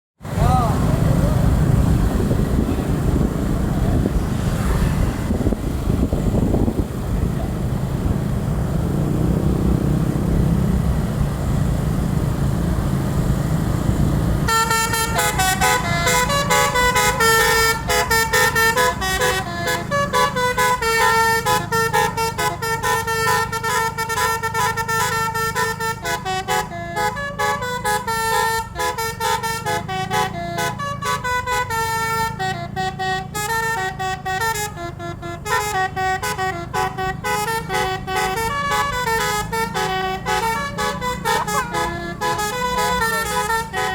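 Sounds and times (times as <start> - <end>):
multi-tone musical bus horn: 14.4 - 43.9.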